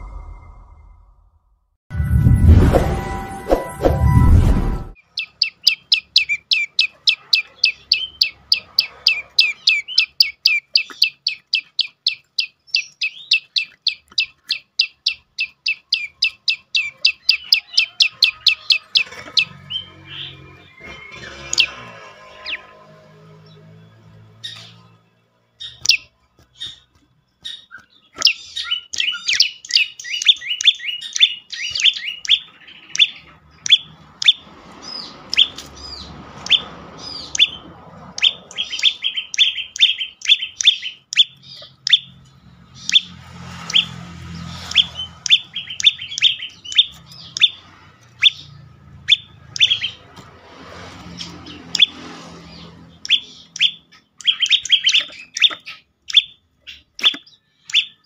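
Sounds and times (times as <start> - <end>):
faint low rumble: 0.0 - 5.0
bird chirping: 5.0 - 58.0.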